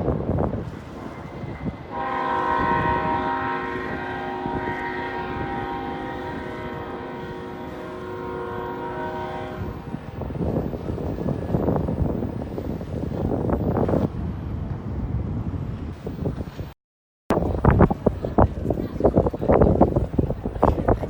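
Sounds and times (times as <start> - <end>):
wind buffeting microphone: 0.0 - 21.0
horn blast chord: 1.9 - 10.1.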